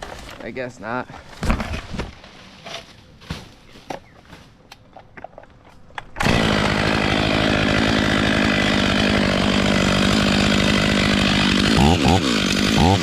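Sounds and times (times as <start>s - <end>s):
chainsaw at full throttle: 6.2s - 13.0s.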